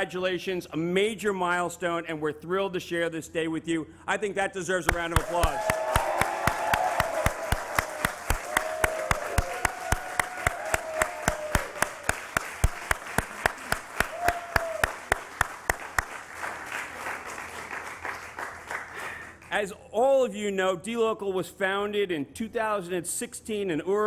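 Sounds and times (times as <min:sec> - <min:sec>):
close steady hand claps: 0:04.9 - 0:19.5
crowd applauding: 0:04.9 - 0:19.5.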